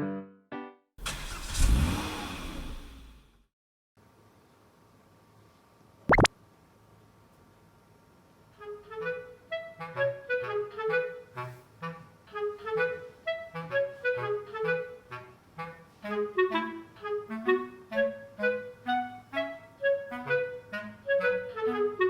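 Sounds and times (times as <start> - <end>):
bouncy clarinet-like melody: 8.6 - 22.0.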